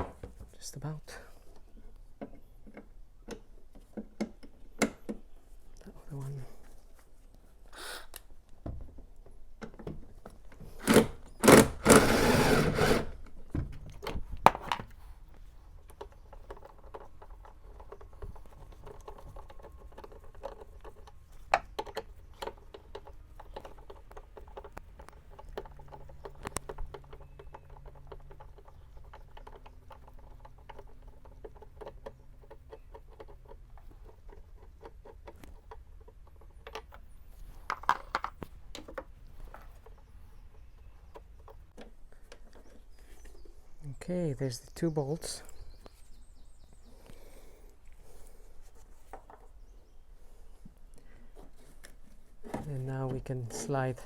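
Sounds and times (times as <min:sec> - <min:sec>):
cordless power gun spinning bolt: 0:10.8 - 0:13.3
clicks and knocks of parts handled: 0:13.2 - 0:40.1.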